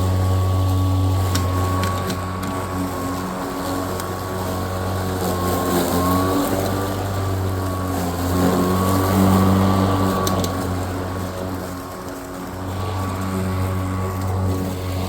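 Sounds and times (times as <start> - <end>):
electric lawnmower cutting grass: 0.0 - 15.0.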